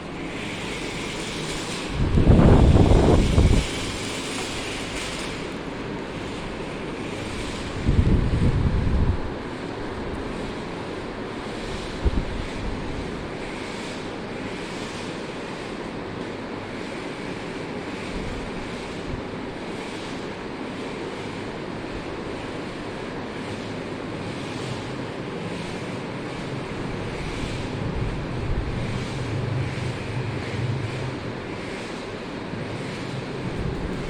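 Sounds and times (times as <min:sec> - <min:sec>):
wind on microphone: 0:00.2 - 0:05.2, 0:06.3 - 0:10.6, 0:26.0 - 0:34.0
low rumble: 0:26.6 - 0:34.0.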